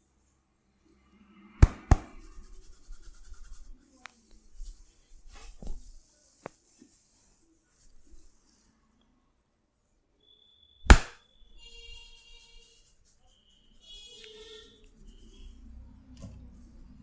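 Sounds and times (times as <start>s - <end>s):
hands slapping head: 1.6s - 2.2s, 10.9s - 11.2s
hands rubbing hair: 1.6s - 8.6s, 11.8s - 15.6s.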